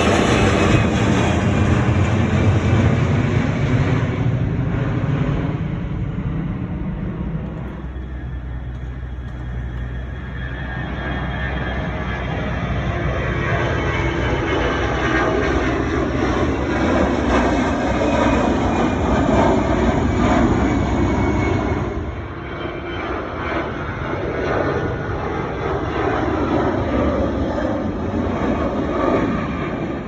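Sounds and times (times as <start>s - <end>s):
jet engines at takeoff: 0.0s - 30.0s.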